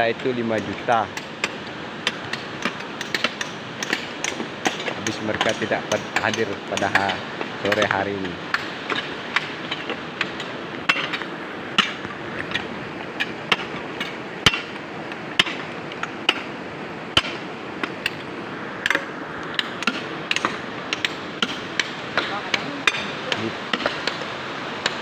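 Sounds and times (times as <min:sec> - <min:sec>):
river water rushing: 0:00.0 - 0:25.0
hammers and chisels striking rock: 0:00.1 - 0:25.0.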